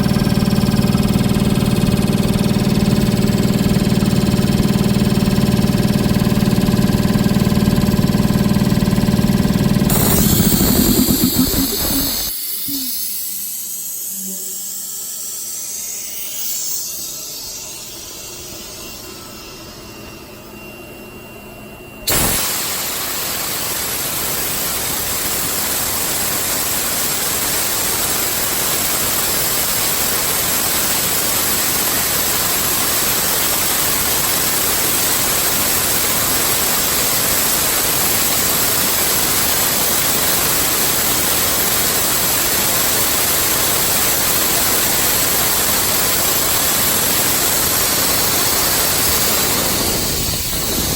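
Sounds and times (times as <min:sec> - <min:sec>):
air compressor rushing: 0:00.0 - 0:14.9, 0:22.1 - 0:23.4, 0:43.0 - 0:50.9.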